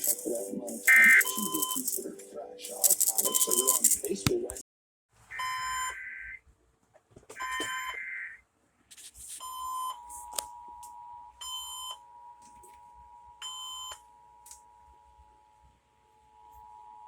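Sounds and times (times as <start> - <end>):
screeching digital data bursts: 0.0 - 4.2.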